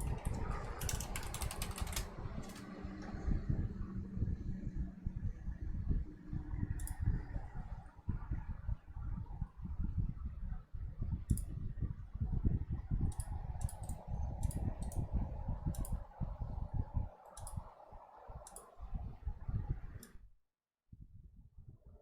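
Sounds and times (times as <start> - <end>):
sharp clicks: 0.0 - 2.6, 13.1 - 15.1, 17.3 - 17.6
fan wind buffeting microphone: 0.0 - 20.2.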